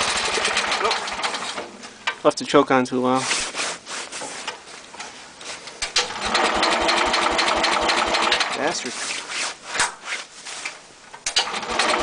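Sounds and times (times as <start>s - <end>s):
engine cranking on starter: 0.0s - 1.7s, 5.8s - 8.6s, 11.2s - 12.0s.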